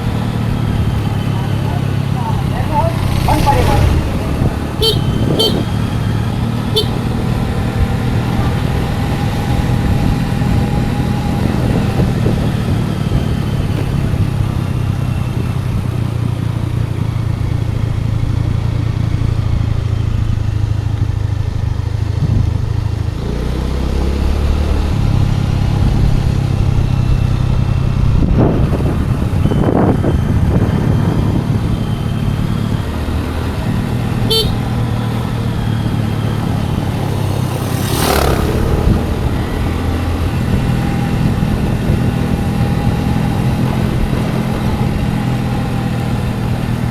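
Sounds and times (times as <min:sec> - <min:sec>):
road and wind noise: 0:00.0 - 0:46.9
scooter engine running: 0:00.0 - 0:46.9.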